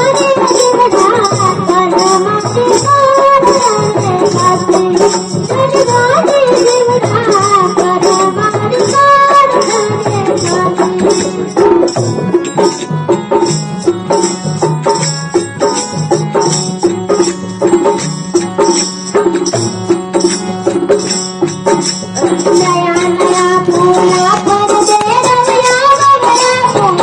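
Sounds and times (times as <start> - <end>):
person singing: 0.0 - 12.8, 21.7 - 27.0
hand percussion beat: 0.0 - 27.0
held melodic notes: 0.0 - 27.0.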